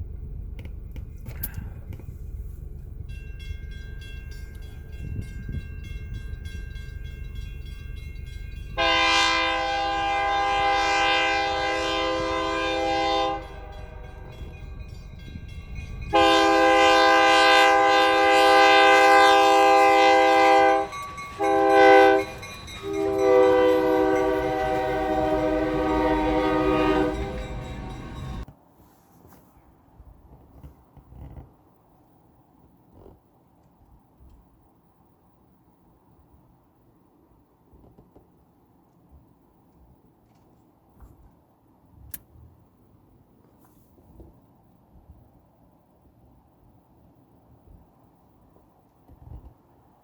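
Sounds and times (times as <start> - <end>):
train rumble: 0.0 - 28.6
locomotive air horn blasts: 8.7 - 14.3, 16.1 - 28.4.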